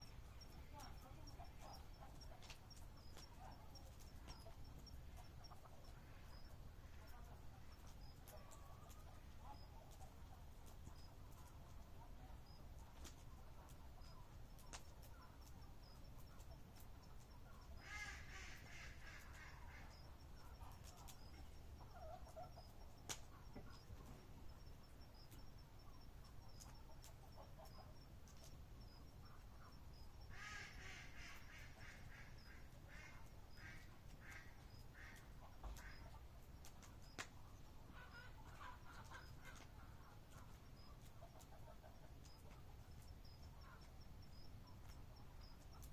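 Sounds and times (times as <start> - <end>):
faint clicks: 0.0 - 30.2, 31.3 - 37.4
animal calls: 13.7 - 37.3.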